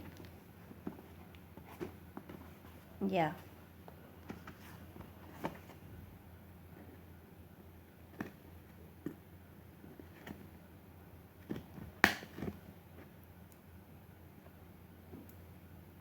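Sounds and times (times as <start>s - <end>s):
sharp snap: 12.0s - 12.3s.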